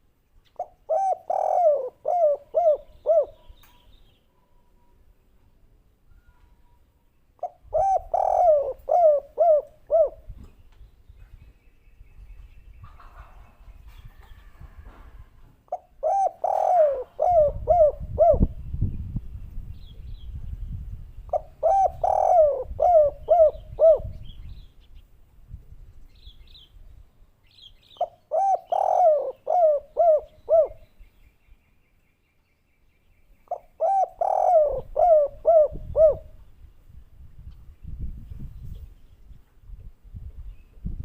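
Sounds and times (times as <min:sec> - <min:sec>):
dove cooing: 0:00.6 - 0:03.6, 0:07.4 - 0:10.3, 0:15.7 - 0:18.6, 0:21.3 - 0:24.3, 0:28.0 - 0:30.8, 0:33.5 - 0:36.4.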